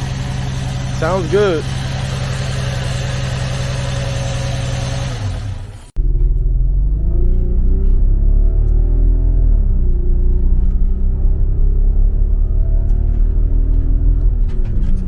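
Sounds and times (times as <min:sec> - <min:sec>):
car engine idling: 0:00.0 - 0:06.9
person speaking: 0:01.0 - 0:01.7.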